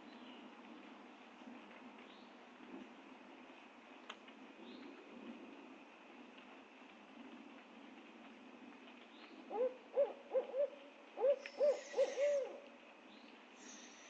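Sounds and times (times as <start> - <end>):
owl hooting: 9.5 - 12.7.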